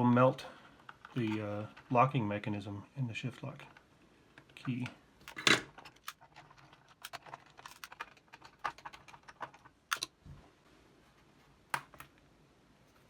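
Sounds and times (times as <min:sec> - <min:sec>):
keyboard clicks and plastic clatter: 0:03.7 - 0:10.2, 0:11.7 - 0:12.2.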